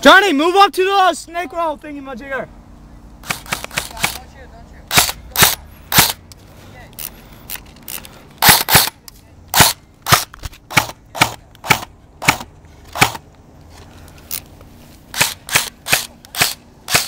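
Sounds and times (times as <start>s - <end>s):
airsoft gun single shots: 4.9s - 6.2s, 8.4s - 13.2s, 15.1s - 17.0s.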